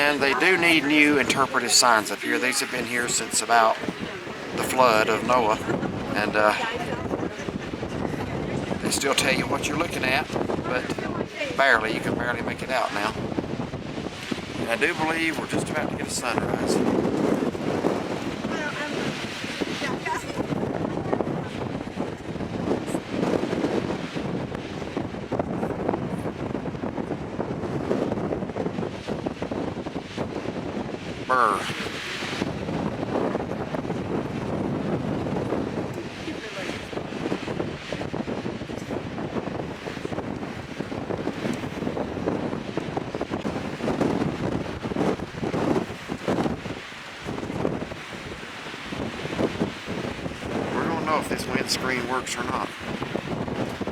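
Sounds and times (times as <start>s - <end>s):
wind buffeting microphone: 0.0s - 53.9s.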